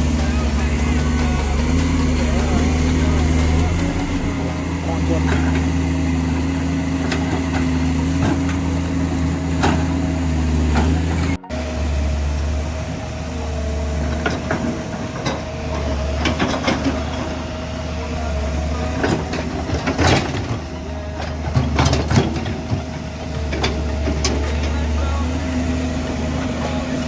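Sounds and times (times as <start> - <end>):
excavator diesel engine running: 0.0 - 27.0
metal clanks and knocks: 1.4 - 11.3, 19.0 - 24.9.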